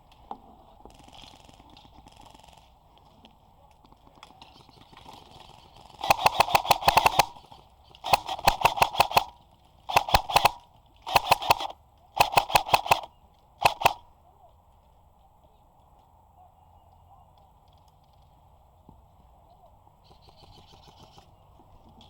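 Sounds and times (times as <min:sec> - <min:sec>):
airsoft gun automatic bursts: 0:04.5 - 0:14.1, 0:20.0 - 0:21.4.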